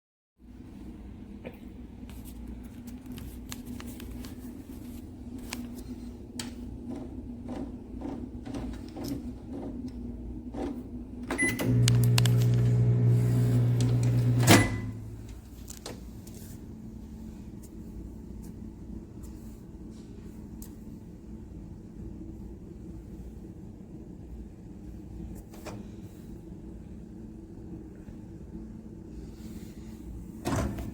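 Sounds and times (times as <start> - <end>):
microwave humming: 6.3 - 15.6
loud microwave click: 11.2 - 15.4
microwave beep: 11.3 - 15.2.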